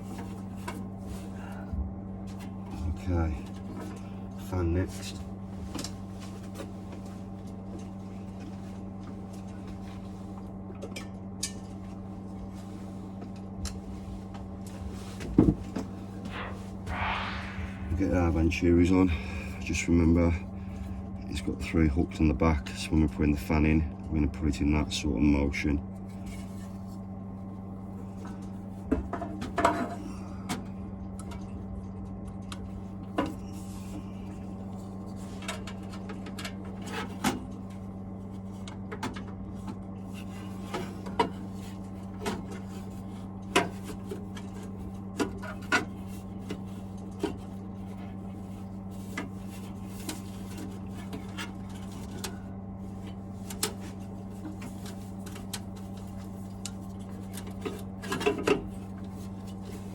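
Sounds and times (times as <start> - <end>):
steady low hum: 16.2 - 22.3.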